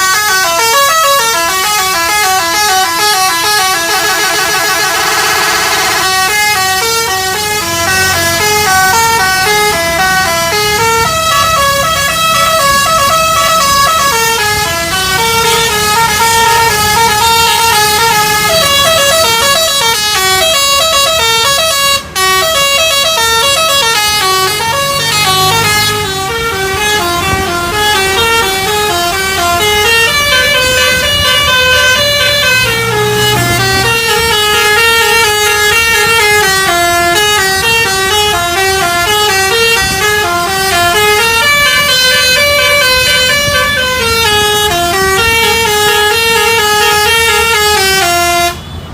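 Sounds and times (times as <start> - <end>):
bus musical horn tune: 0.0 - 48.9
low engine hum: 5.7 - 48.9.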